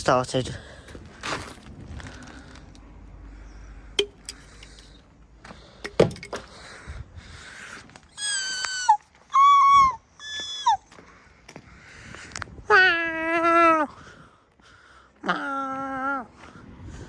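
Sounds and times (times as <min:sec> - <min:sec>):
sharp knocks: 0:04.0 - 0:04.4, 0:05.8 - 0:06.4.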